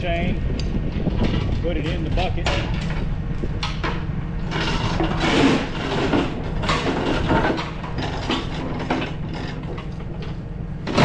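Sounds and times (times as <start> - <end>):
steel chain clanking: 4.5 - 11.0.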